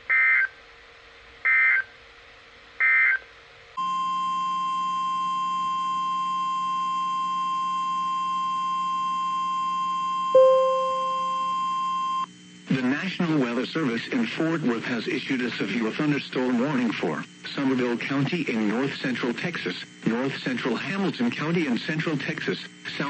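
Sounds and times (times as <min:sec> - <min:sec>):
loud ding: 0:10.4 - 0:11.3
steady alarm tone: 0:10.4 - 0:11.5.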